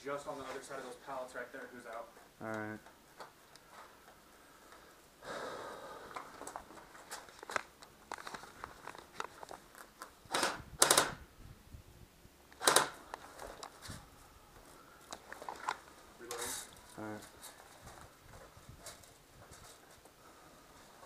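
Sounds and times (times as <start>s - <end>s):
airsoft rifle rapid shots: 10.3s - 11.2s, 12.6s - 13.0s.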